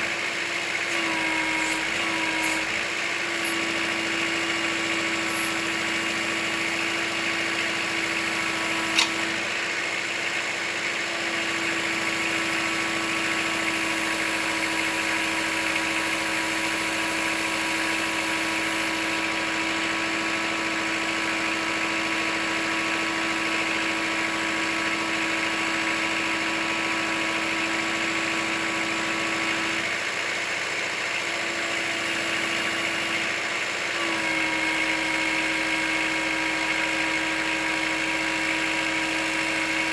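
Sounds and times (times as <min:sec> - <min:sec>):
tractor diesel engine running: 0:00.0 - 0:31.0
sharp click: 0:08.9 - 0:09.3.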